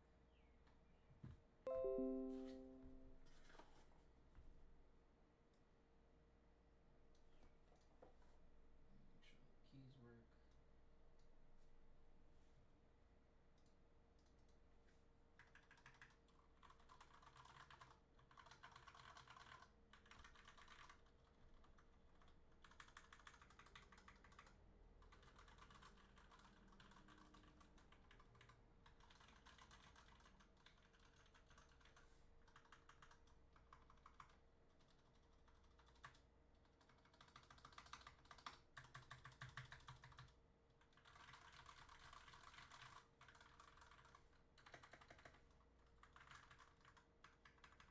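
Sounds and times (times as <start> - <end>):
fast typing on mechanical keyboard: 15.3 - 47.9.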